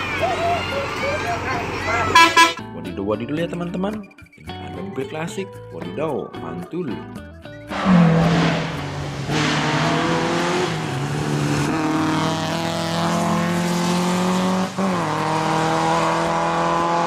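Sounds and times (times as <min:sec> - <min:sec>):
racing car engine at high revs: 0:07.7 - 0:17.0.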